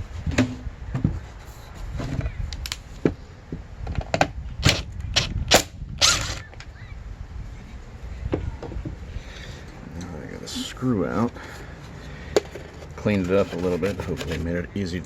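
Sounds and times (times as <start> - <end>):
tool scraping plastic: 12.4 - 14.6.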